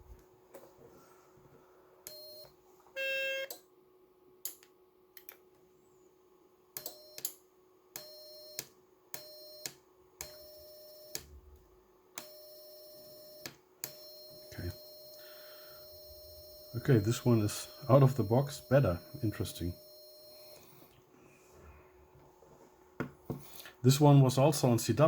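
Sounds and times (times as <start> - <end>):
morse code beeps with clicks: 13.9 - 20.6.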